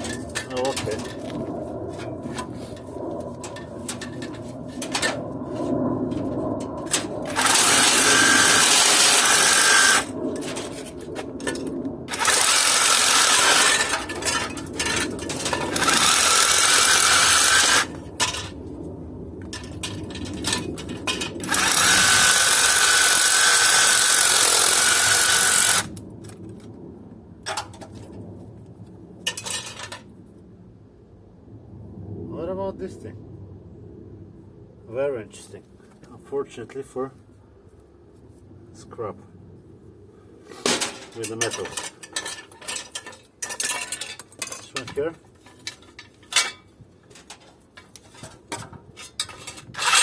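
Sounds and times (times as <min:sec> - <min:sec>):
electric drill into sheet metal: 0:07.0 - 0:10.2, 0:12.1 - 0:14.4, 0:15.6 - 0:18.0, 0:21.4 - 0:25.9
light metal clatter: 0:40.6 - 0:50.0.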